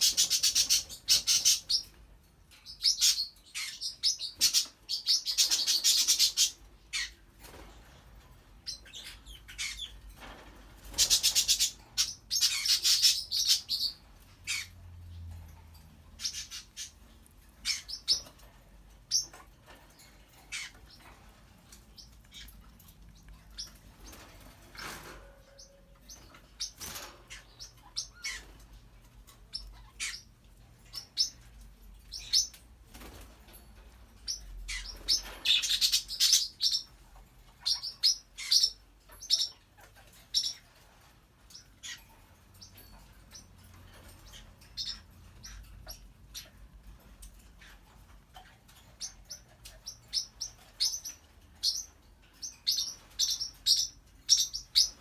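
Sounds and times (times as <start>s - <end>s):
parrot chirping and clicking: 8.6s - 33.2s.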